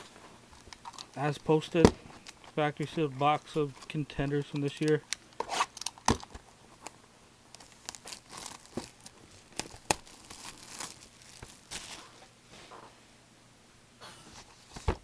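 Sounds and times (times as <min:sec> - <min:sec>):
plastic shrink wrap tearing: 0:07.5 - 0:12.1.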